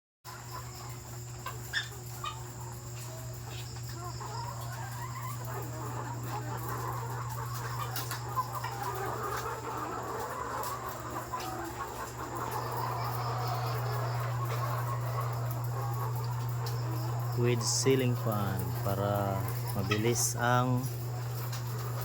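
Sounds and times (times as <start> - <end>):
hens clucking: 0.3 - 22.0
steady low hum: 11.0 - 22.0.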